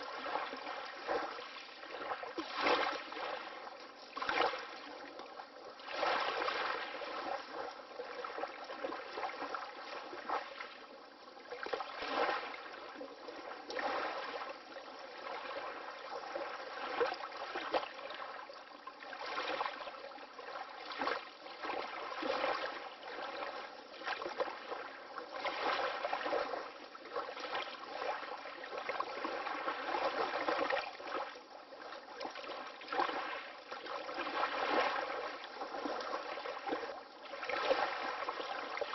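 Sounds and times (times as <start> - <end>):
small waves lapping: 0.0 - 38.9.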